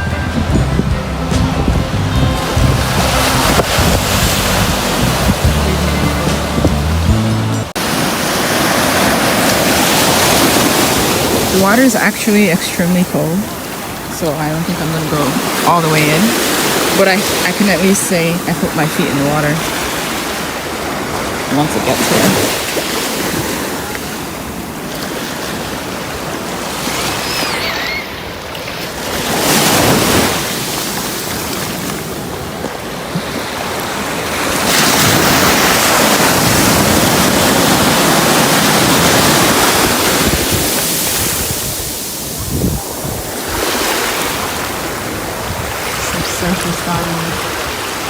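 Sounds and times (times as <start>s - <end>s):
wind buffeting microphone: 0.0s - 7.3s, 32.0s - 43.8s, 44.7s - 47.9s
ocean waves washing on beach: 0.0s - 48.0s.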